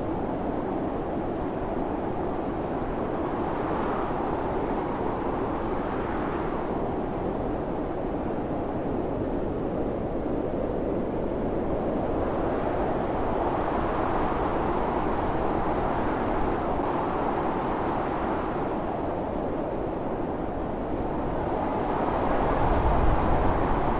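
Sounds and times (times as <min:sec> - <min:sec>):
blizzard wind roaring: 0:00.0 - 0:23.9.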